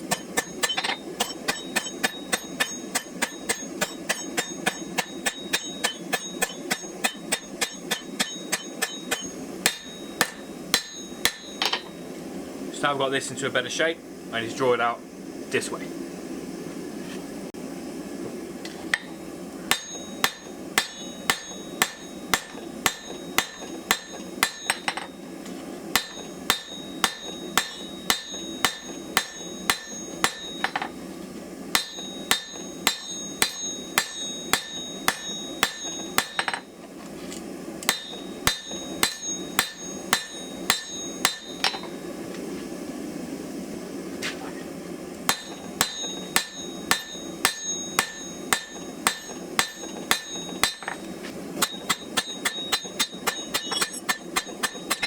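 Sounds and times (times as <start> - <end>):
hammer striking steel on anvil: 0.0 - 12.1, 19.7 - 25.3, 25.9 - 31.0, 31.7 - 36.7, 37.8 - 42.0, 45.3 - 55.0.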